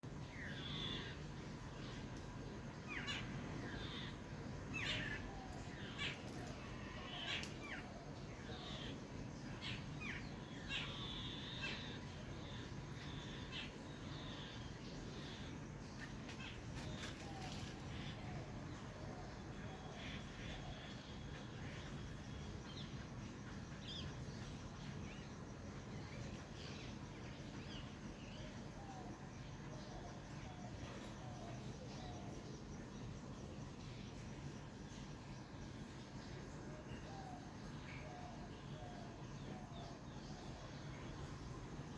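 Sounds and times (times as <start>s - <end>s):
low background noise: 0.0s - 41.9s
small birds chirping: 0.0s - 41.9s
birds calling: 0.1s - 9.0s.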